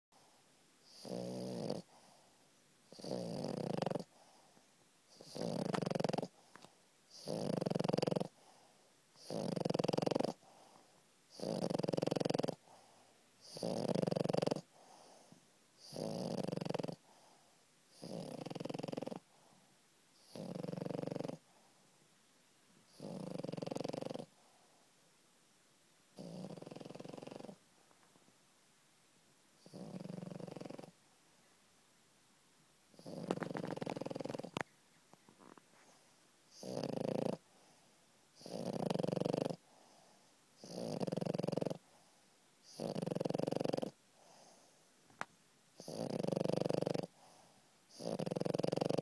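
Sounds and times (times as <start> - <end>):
dog snoring loudly: 0.8 - 2.2, 2.9 - 4.4, 5.1 - 6.4, 7.1 - 8.6, 9.2 - 17.2, 17.9 - 19.2, 20.2 - 21.5, 22.9 - 24.4, 26.2 - 27.6, 29.6 - 31.0, 32.9 - 34.6, 35.4 - 37.8, 38.4 - 40.0, 40.6 - 41.8, 42.6 - 44.6, 45.8 - 49.0.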